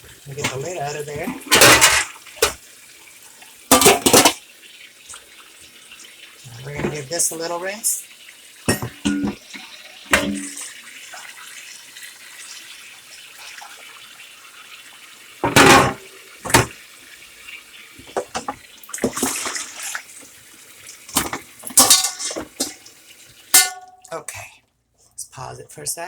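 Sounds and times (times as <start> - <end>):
tap water splashing in sink: 0.0 - 24.1
knocks and clunks in sink: 0.2 - 2.6, 3.7 - 4.4, 6.6 - 7.2, 8.7 - 10.7, 15.4 - 16.8, 18.0 - 19.6, 21.1 - 22.8.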